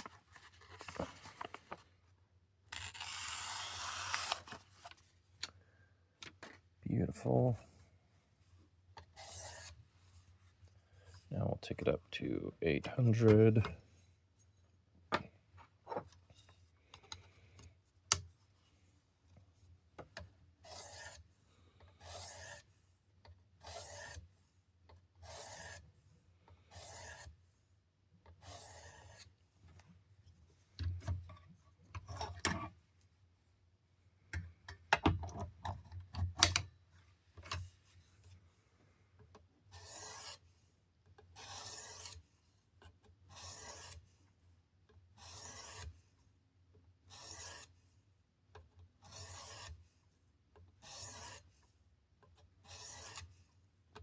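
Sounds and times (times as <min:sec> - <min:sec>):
sharpening stone scraping knife edge: 0:41.4 - 0:42.2, 0:45.2 - 0:45.8, 0:47.1 - 0:47.7, 0:49.1 - 0:49.7, 0:50.8 - 0:51.4, 0:52.7 - 0:53.2.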